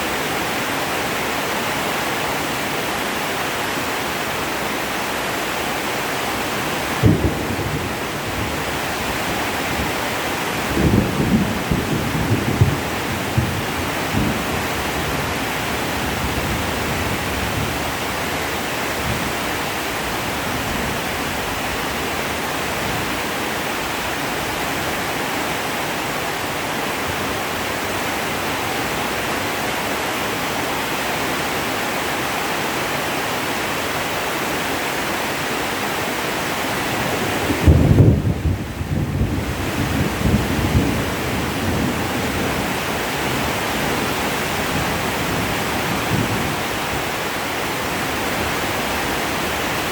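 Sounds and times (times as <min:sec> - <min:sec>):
heavy rain hiss: 0:00.0 - 0:49.9
thunder rumble: 0:06.8 - 0:10.0, 0:10.6 - 0:18.2, 0:37.3 - 0:47.0.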